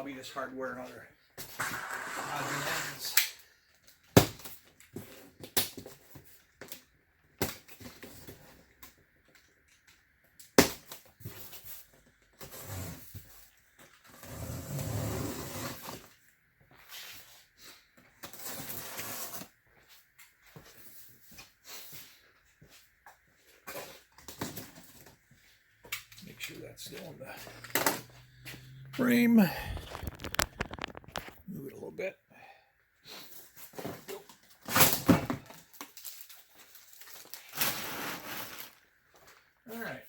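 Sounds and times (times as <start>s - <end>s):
cardboard rustling and scraping: 29.7s - 31.4s, 36.7s - 38.8s.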